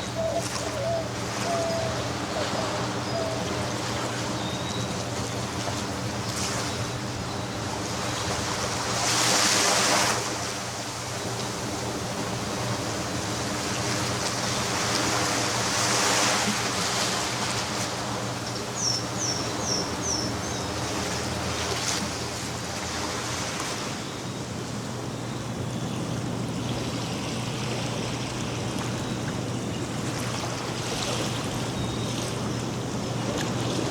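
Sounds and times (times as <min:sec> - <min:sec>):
bird chirping: 0:00.0 - 0:03.5
ocean waves on sandy beach: 0:00.0 - 0:33.9.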